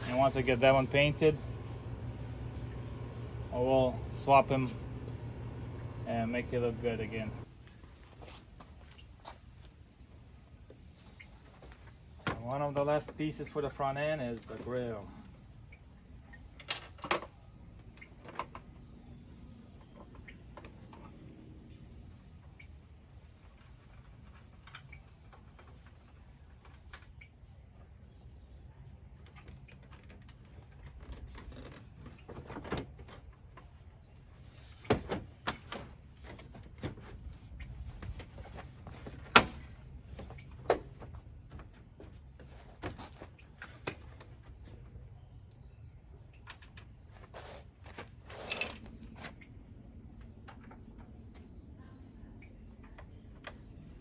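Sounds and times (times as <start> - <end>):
low steady hum: 0.0 - 8.1.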